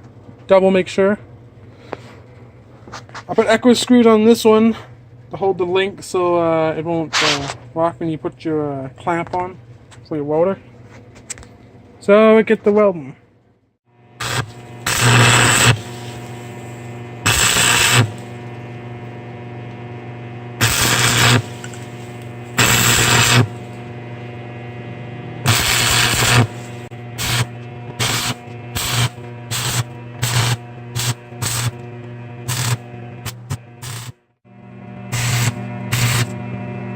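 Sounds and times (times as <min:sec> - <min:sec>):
electrical hum: 0:00.0 - 0:36.9
welding arc crackling: 0:14.1 - 0:24.4, 0:25.4 - 0:34.2, 0:35.1 - 0:36.4.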